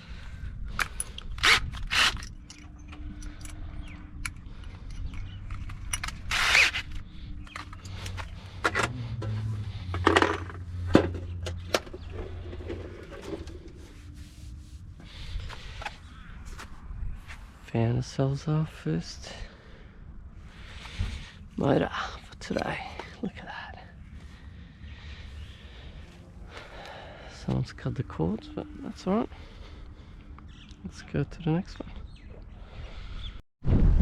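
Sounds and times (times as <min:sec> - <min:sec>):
metallic clinks and scrapes of tools: 0:00.8 - 0:14.0.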